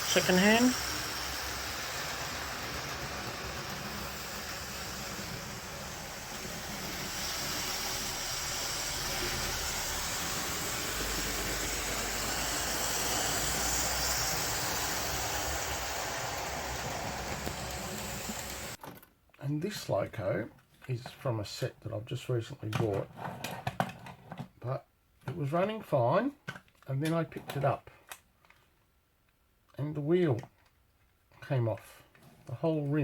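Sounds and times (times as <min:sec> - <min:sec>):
model train whirring on rails: 0:00.0 - 0:18.8.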